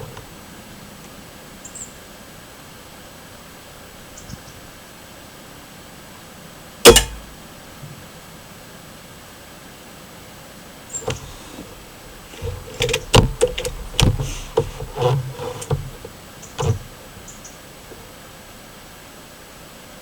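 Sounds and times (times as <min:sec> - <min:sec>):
handling clicks and knocks: 0:06.9 - 0:07.4, 0:10.9 - 0:18.1
dull low thuds: 0:11.0 - 0:18.1.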